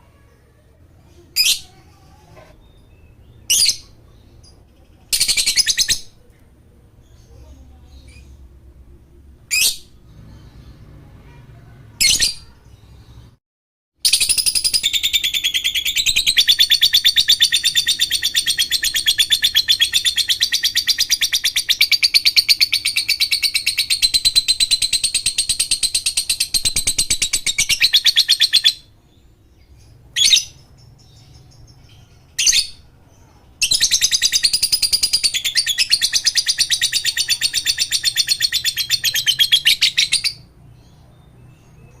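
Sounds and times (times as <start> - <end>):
lovebird chattering trill: 14.1 - 28.9, 33.6 - 40.5.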